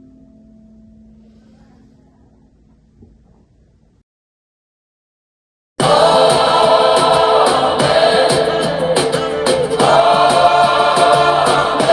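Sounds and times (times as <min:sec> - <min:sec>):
choir singing worship music: 0:05.8 - 0:11.9.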